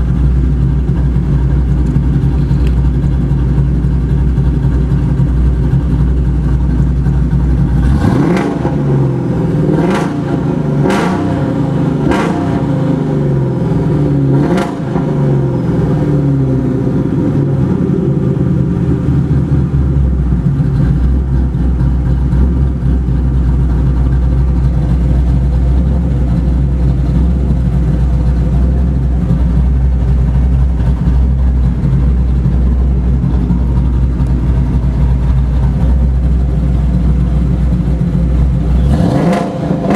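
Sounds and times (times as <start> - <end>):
car engine idling and revving: 0.0 - 39.9
exhaust cracks: 0.0 - 39.9.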